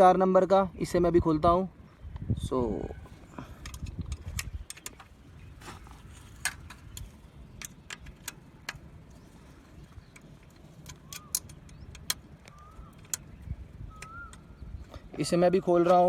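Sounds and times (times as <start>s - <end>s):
allen key clicking on metal: 10.2s - 13.3s.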